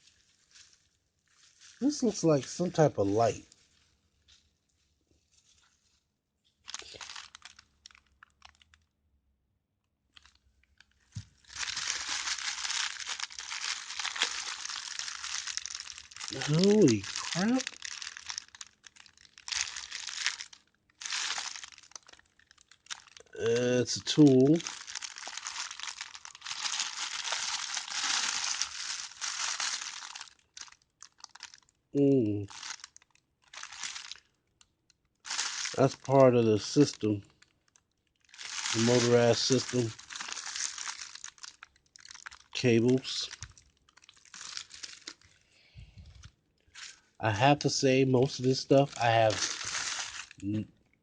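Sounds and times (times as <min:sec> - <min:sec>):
packaging crinkling and rustling: 0:00.0 - 0:08.9, 0:10.1 - 0:31.8, 0:32.4 - 0:45.4, 0:46.0 - 0:47.2, 0:48.2 - 0:50.6.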